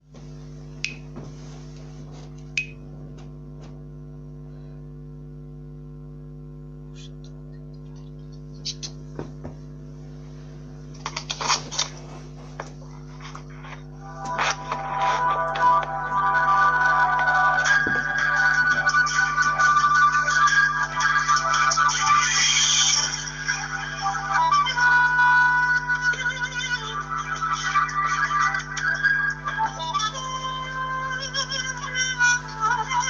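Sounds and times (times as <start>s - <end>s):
electrical mains hum: 0.0s - 33.0s
music: 14.0s - 33.0s.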